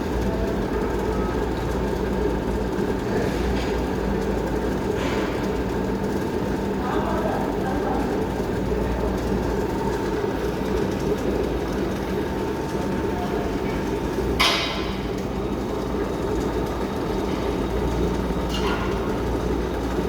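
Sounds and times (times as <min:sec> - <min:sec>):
metal lathe running: 0:07.4 - 0:20.0.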